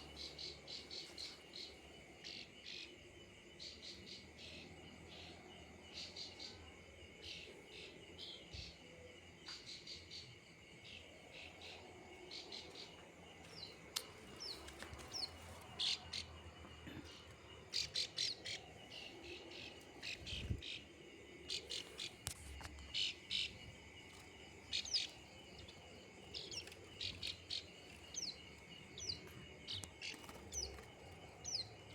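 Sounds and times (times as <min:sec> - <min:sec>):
high insect drone: 0:00.0 - 0:31.9
bird chirping: 0:10.9 - 0:22.3, 0:24.6 - 0:31.9.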